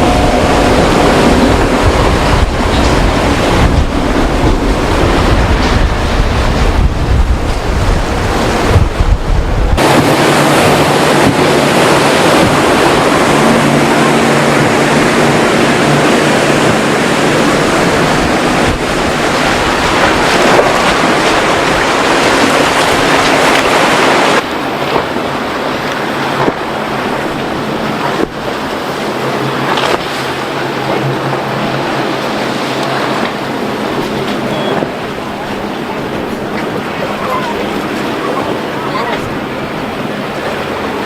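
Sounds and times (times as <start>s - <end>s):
boat engine hum: 0.0s - 41.0s
surf: 0.0s - 41.0s
wind on microphone: 0.0s - 41.0s.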